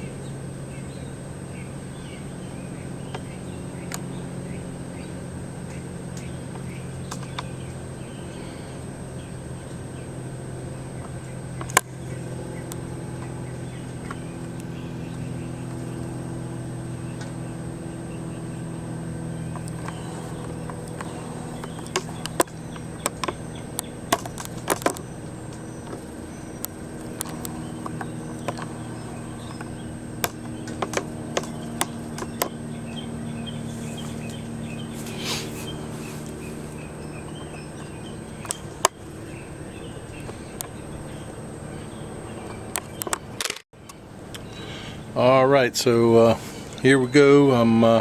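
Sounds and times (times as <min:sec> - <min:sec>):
motor humming: 0:00.0 - 0:48.0.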